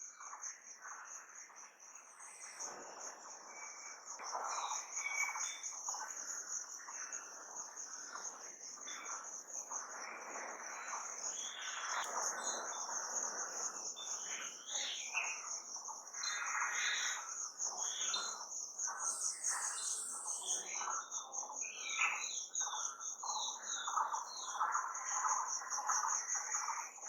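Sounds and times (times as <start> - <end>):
bird calls and chirps: 0.0 - 27.0
insect chorus trilling: 0.0 - 27.0.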